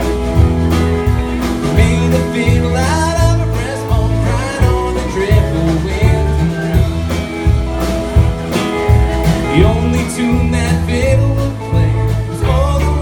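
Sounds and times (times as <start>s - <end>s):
bass line: 0.0s - 13.0s
guitar: 0.0s - 13.0s
person singing: 1.6s - 7.2s, 9.2s - 13.0s.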